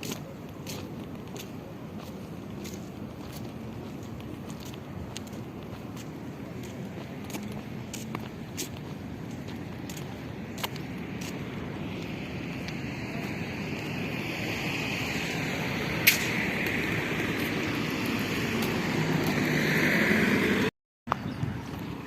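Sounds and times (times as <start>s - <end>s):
vehicle driving on road: 0.0s - 22.0s
sharp click: 16.0s - 16.4s.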